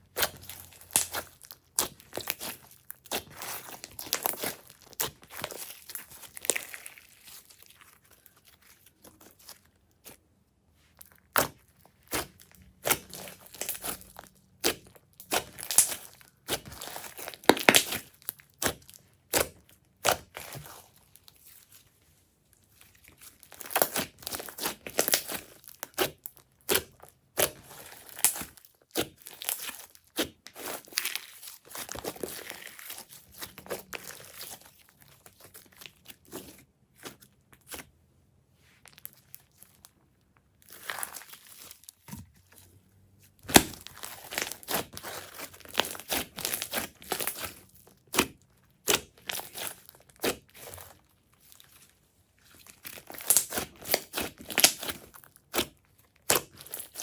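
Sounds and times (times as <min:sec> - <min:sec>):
sticky slime pops and crackles: 0:00.2 - 0:06.7, 0:11.3 - 0:20.6, 0:23.6 - 0:31.0, 0:43.4 - 0:50.8, 0:52.9 - 0:57.0.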